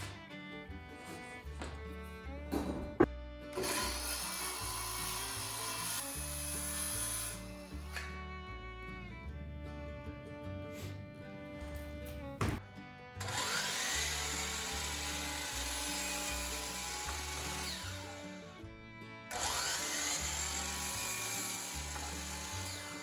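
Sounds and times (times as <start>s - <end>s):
power tool motor spinning up: 3.6s - 7.5s, 13.2s - 18.2s, 19.3s - 23.0s
music with steady bass line: 8.2s - 13.1s.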